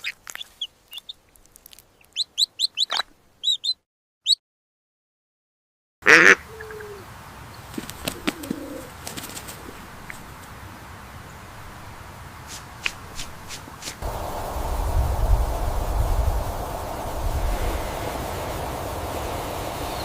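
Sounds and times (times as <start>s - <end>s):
faint chirps and clicks: 0.0s - 3.8s
bird calling: 2.0s - 3.8s, 6.1s - 7.0s, 8.0s - 9.0s
steady outdoor hiss: 6.1s - 20.0s
wind-like rumble: 14.0s - 20.0s.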